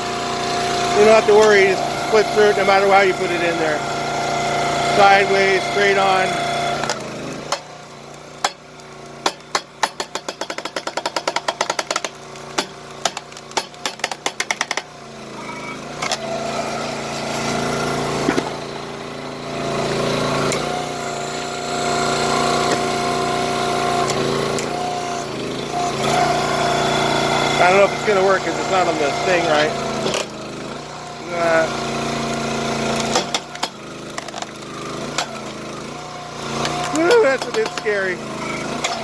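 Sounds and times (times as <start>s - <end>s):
log splitter engine running: 0.0s - 39.0s
sharp cracks and clicks: 6.8s - 14.9s, 30.0s - 30.4s, 32.2s - 35.8s, 36.6s - 39.0s.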